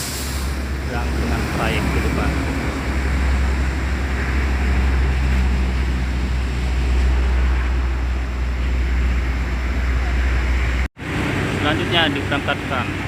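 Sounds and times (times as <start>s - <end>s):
bus engine rumbling: 0.0s - 13.0s.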